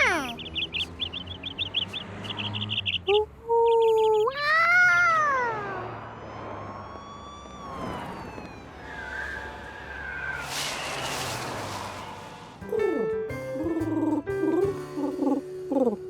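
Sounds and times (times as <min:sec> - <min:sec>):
bird chirps: 0:00.0 - 0:04.4
faint long sliding tones: 0:05.6 - 0:12.6.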